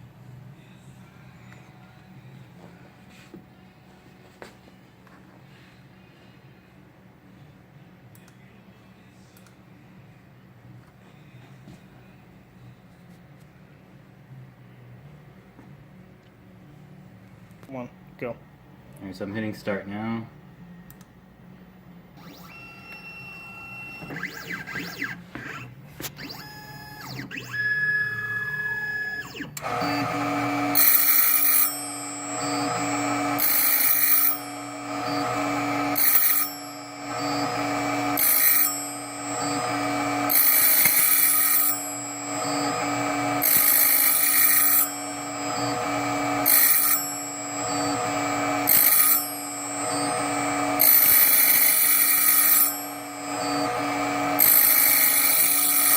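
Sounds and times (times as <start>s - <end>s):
motors whining: 22.2s - 55.9s
key cutter spindle cutting: 24.0s - 55.9s.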